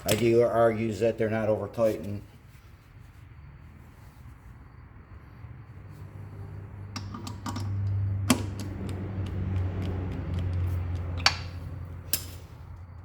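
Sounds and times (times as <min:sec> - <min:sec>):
sharp clicks and knocks: 0:07.0 - 0:12.3.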